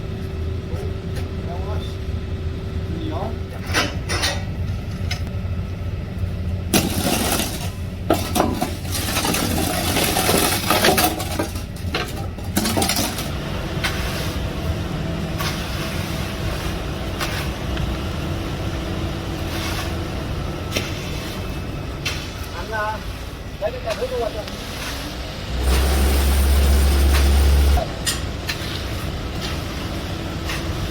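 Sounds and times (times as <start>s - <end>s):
engine running steadily: 0.0s - 30.9s
wet concrete rushing and scraping: 6.7s - 30.9s.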